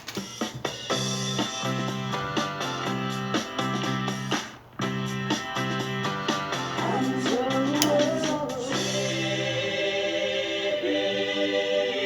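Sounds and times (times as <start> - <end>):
instrumental pop music: 0.0 - 12.0.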